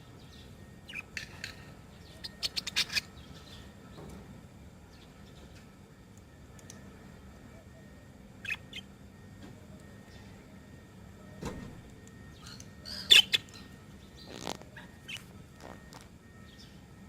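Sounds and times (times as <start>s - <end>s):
budgerigars chirping and squawking: 2.0s - 3.6s, 8.4s - 8.9s, 12.4s - 15.3s.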